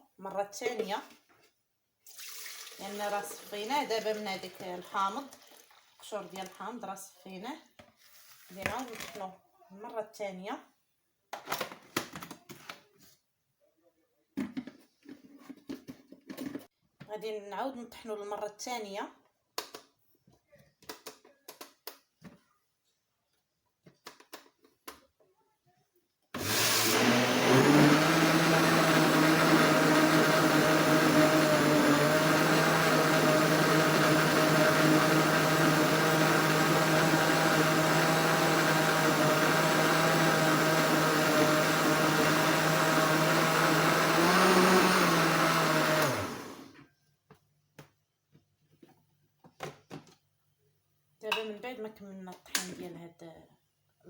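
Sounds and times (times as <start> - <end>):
electric blender running: 26.4 - 46.8.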